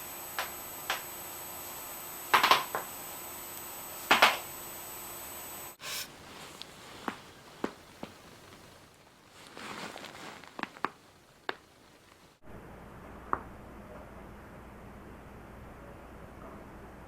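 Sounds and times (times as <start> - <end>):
rustle: 5.8 - 11.0.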